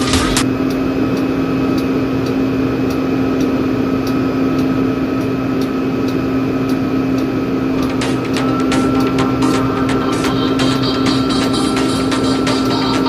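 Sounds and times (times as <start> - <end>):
machinery hum: 0.0 - 5.4, 7.3 - 13.0.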